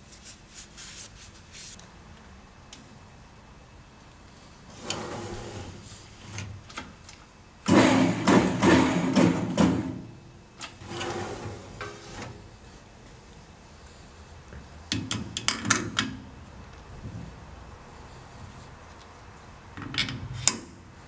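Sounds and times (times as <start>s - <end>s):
clattering knocks: 7.7s - 10.0s.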